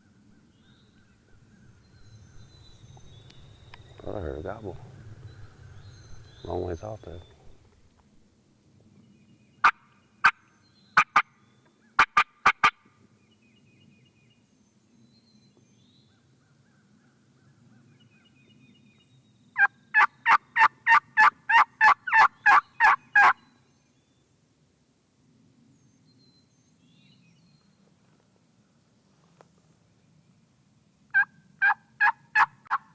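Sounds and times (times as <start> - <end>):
turkey call yelps: 19.6 - 23.4, 31.1 - 32.9.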